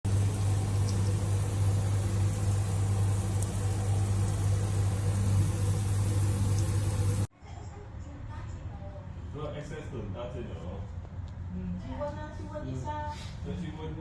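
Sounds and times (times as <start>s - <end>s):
electric machine humming: 0.0s - 7.3s.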